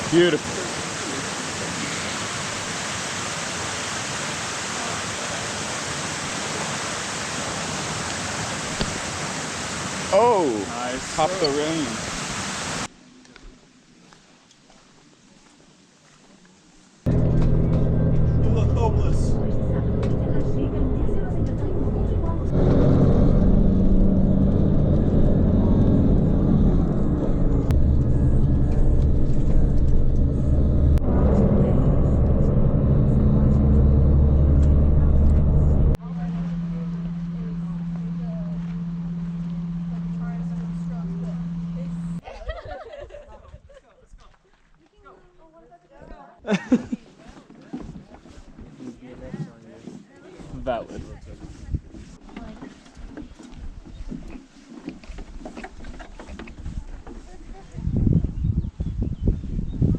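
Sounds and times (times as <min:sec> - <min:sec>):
river water rushing: 0:00.0 - 0:12.9
vehicle engine rumbling: 0:17.1 - 0:42.2.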